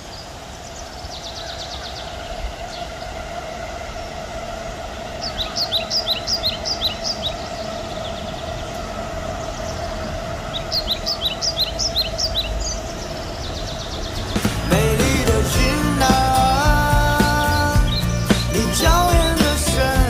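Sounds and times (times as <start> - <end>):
small songbird singing: 0.0 - 2.9, 5.2 - 8.7, 10.5 - 20.0.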